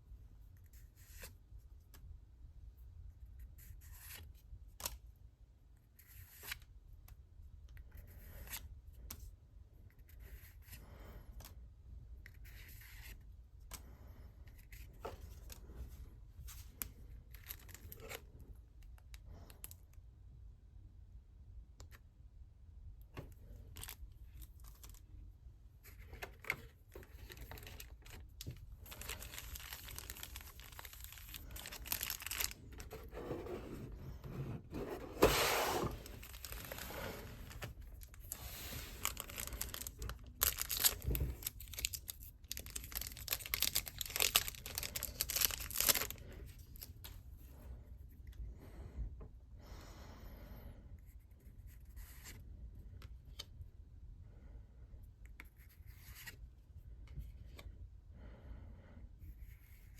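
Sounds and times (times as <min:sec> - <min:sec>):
crinkling packaging: 0:26.4 - 0:33.2, 0:35.0 - 0:46.9
packaging tearing and rustling: 0:27.1 - 0:33.2, 0:34.9 - 0:46.2.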